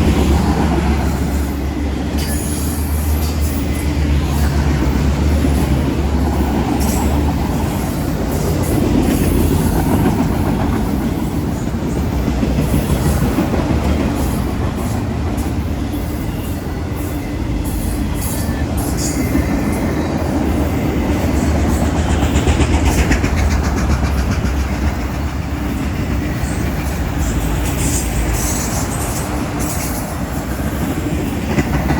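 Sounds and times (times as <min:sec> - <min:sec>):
train wheels on rails: 0:00.0 - 0:31.9.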